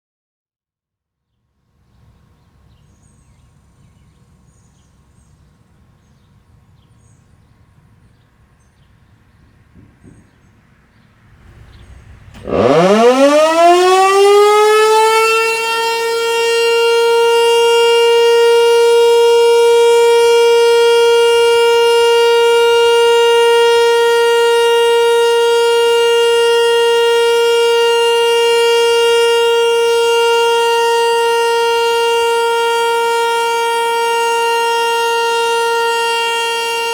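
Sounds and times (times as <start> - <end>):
tornado siren winding up: 11.3 - 36.9.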